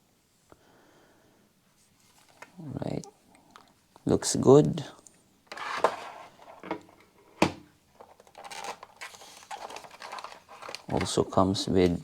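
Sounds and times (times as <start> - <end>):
packaging rustling: 5.5 - 7.0, 7.9 - 12.0.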